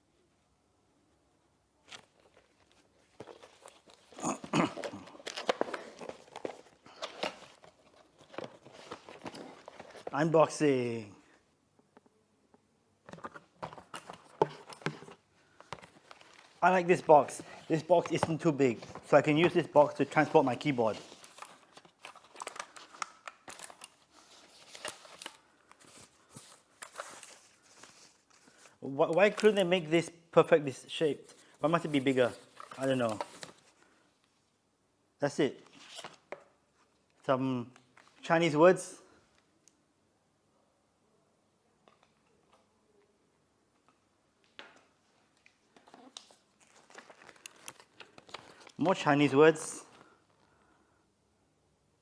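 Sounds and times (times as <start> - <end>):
packaging crinkling and crackling: 2.0 - 10.1, 17.6 - 29.6, 45.4 - 48.8.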